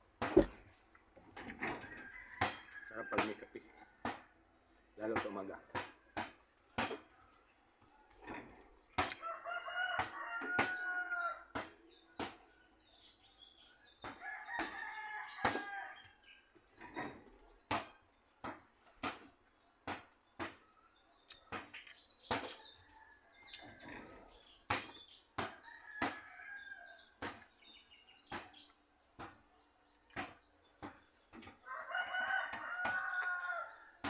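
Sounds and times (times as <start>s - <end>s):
rooster crowing: 1.8s - 3.4s, 9.2s - 11.5s, 14.2s - 16.0s, 25.6s - 27.1s, 31.6s - 34.0s.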